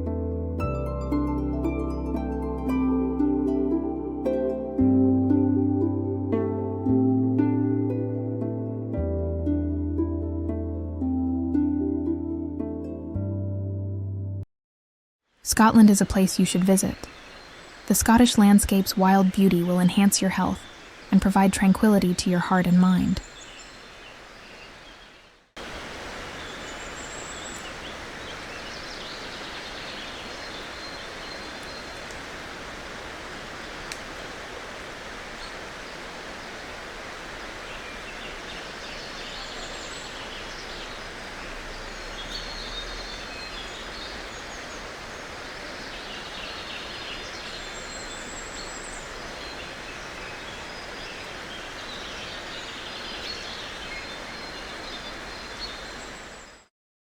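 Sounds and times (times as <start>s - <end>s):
birds chirping: 15.5s - 56.7s.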